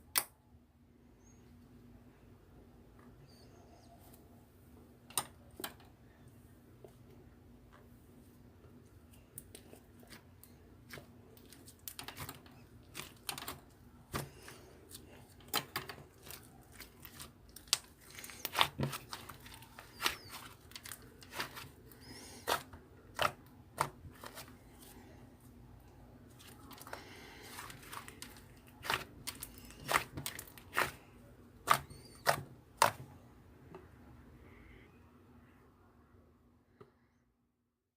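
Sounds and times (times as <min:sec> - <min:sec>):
slime squished by hand: 0:26.3 - 0:31.0.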